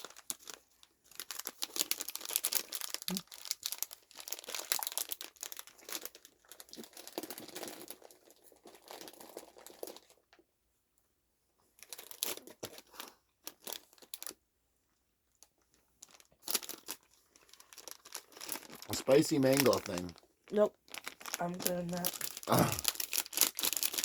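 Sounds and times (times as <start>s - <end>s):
plastic wrappers crinkling: 0.0s - 10.3s, 11.8s - 14.4s, 15.3s - 24.0s.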